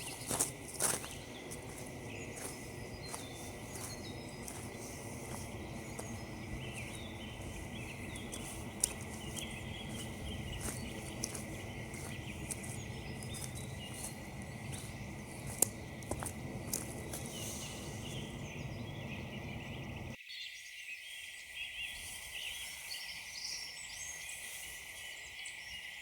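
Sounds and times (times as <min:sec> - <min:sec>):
footsteps on frozen leaves: 0:00.0 - 0:19.8
small birds chirping: 0:00.0 - 0:26.0.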